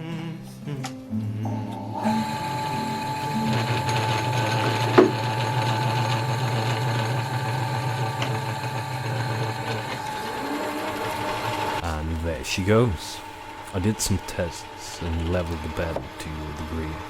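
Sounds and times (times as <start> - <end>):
lathe motor hum: 1.5 - 17.0
gears and belt chatter: 2.1 - 17.0.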